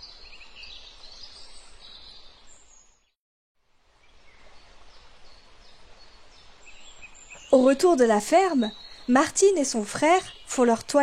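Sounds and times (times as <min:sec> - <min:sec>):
outdoor hiss: 0:03.6 - 0:11.0
faint birds chirping: 0:03.9 - 0:11.0.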